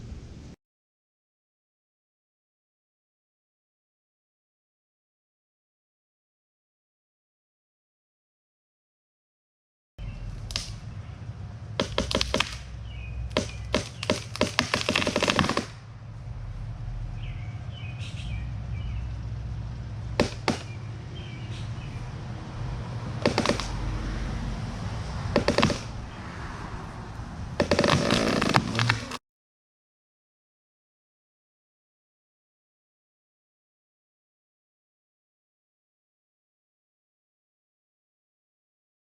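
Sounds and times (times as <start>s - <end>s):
branches crashing: 10.0s - 16.4s, 17.2s - 22.0s, 22.8s - 24.2s, 24.8s - 26.6s, 27.6s - 29.2s
wood cracking: 10.0s - 16.4s, 20.1s - 20.8s, 23.0s - 24.1s, 24.9s - 26.3s, 27.1s - 29.2s
small birds chirping: 10.0s - 22.6s
tree trunk thudding down: 11.8s - 15.9s, 20.2s - 20.8s, 23.2s - 23.8s.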